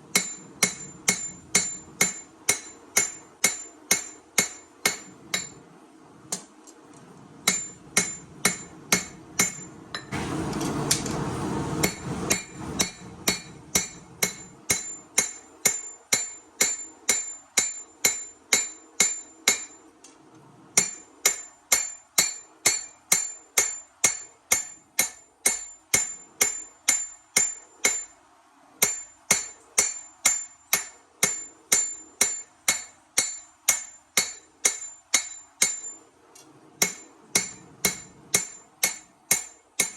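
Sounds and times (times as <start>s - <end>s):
hammer striking metal on anvil: 0.1s - 5.6s, 7.4s - 11.2s, 11.8s - 19.9s, 20.8s - 28.2s, 28.8s - 36.1s, 36.8s - 39.9s.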